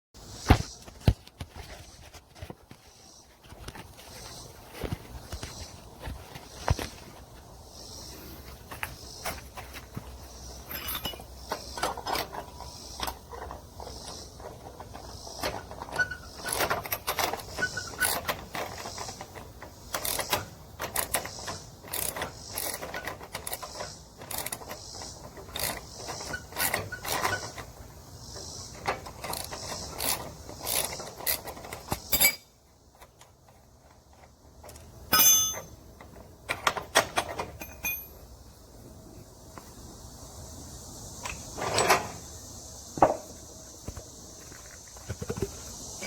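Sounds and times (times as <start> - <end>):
tools and metal parts clanking: 8.7 - 27.8, 28.7 - 38.3, 41.2 - 42.3.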